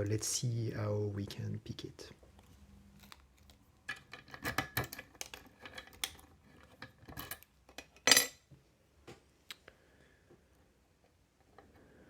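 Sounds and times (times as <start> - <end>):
lock picks clicking and scraping: 3.0 - 8.3.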